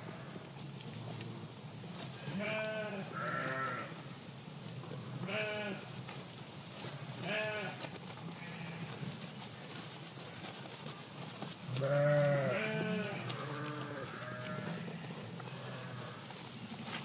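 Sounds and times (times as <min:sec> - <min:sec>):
outdoor background noise: 0:00.0 - 0:17.0
sheep bleating: 0:02.3 - 0:04.0, 0:05.2 - 0:05.9, 0:07.2 - 0:07.8, 0:11.7 - 0:16.3.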